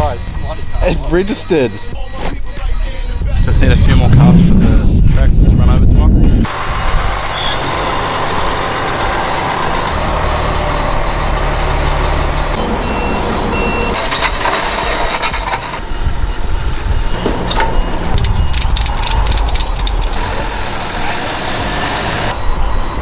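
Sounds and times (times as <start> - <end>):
truck engine rumble: 3.0 - 22.6
road noise: 6.4 - 23.0.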